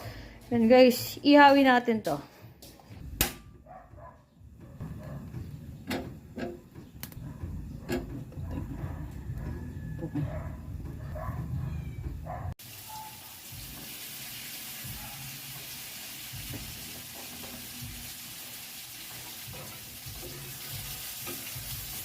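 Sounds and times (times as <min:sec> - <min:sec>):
eggplant sizzling: 0:12.6 - 0:22.0.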